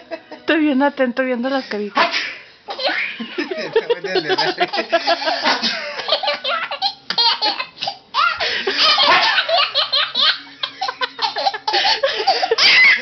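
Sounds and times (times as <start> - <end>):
baby laughing: 2.7 - 13.0.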